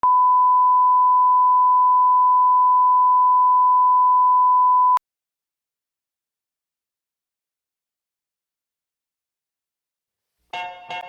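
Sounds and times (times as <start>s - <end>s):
steady pure test tone beep: 0.0s - 5.0s.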